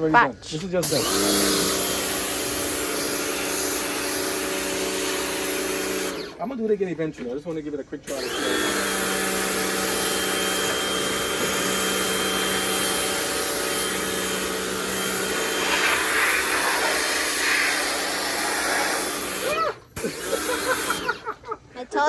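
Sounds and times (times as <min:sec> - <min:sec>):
pressure washer motor hum: 0:00.8 - 0:06.5, 0:08.1 - 0:21.3
water jet hissing: 0:12.5 - 0:21.1.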